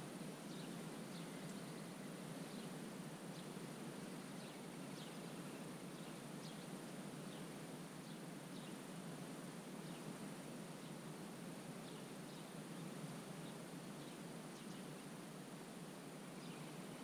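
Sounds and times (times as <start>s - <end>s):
soft background hiss: 0.0s - 17.0s.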